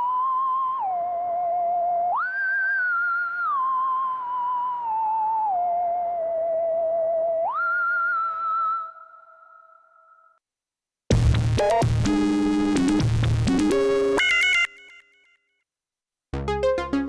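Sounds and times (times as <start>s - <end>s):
synthesizer lead with vibrato: 12.0s - 15.2s.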